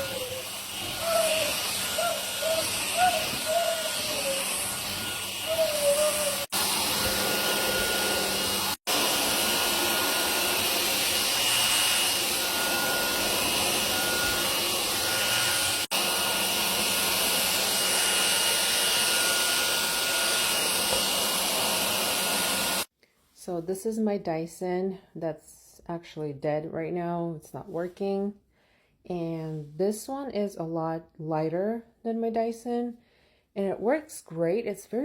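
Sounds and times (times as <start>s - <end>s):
stick vacuum running: 0.0s - 22.8s.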